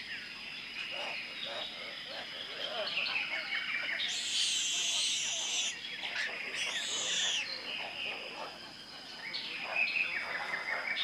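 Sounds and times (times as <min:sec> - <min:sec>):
birds calling: 0:00.8 - 0:08.6
bird whistled calls: 0:04.1 - 0:05.8, 0:06.5 - 0:07.5
high-pitched insect drone: 0:04.1 - 0:05.8, 0:06.4 - 0:07.5.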